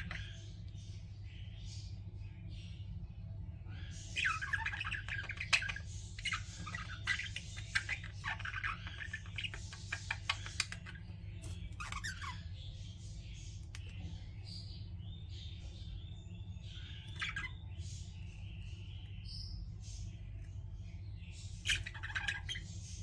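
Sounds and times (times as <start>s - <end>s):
budgerigars chattering and squawking: 0.0s - 2.9s, 3.6s - 23.0s.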